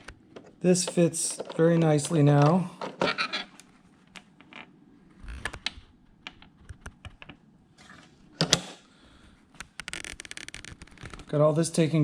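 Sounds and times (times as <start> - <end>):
battery cables clicking and knocking: 5.4 - 7.4.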